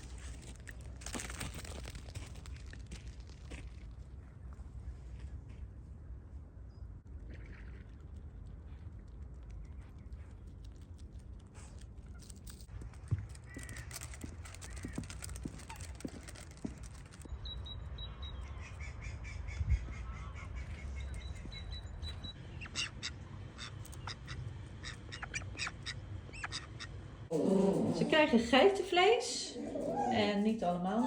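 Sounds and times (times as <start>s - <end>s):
birds calling: 13.4s - 16.3s, 18.0s - 31.0s
ducks quacking: 22.6s - 31.0s.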